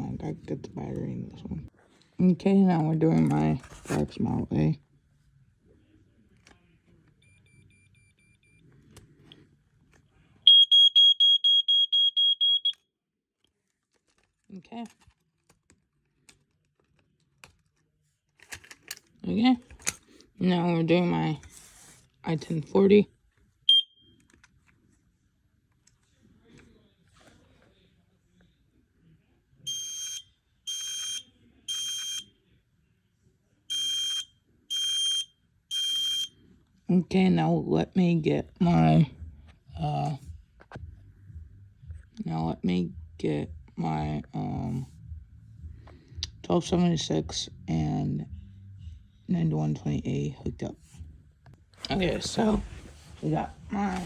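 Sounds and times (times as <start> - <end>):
smoke alarm beeping rapidly: 10.5 - 12.8, 23.7 - 24.1, 29.7 - 32.2, 33.7 - 36.3.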